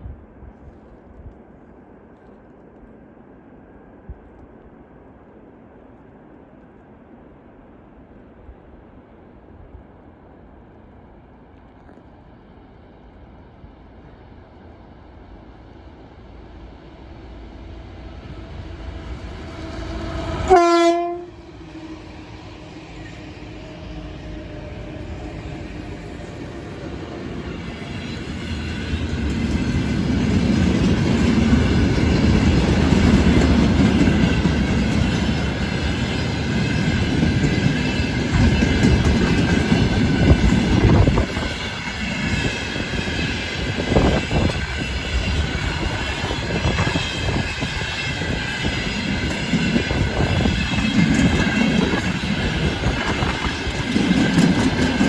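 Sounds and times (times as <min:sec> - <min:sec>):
train wheels rumbling on rails: 0:03.7 - 0:55.0
wheels clacking over rail joints: 0:46.7 - 0:55.0.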